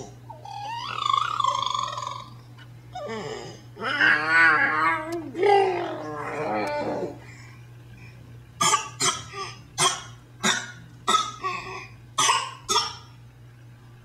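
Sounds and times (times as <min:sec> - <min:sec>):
baby fake coughing: 0:08.6 - 0:13.1.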